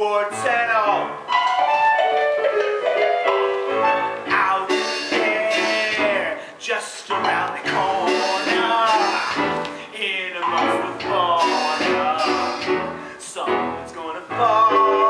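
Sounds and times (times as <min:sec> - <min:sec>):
piano accompaniment: 0:00.0 - 0:15.0
people singing sustained notes: 0:07.9 - 0:09.6, 0:11.4 - 0:12.9.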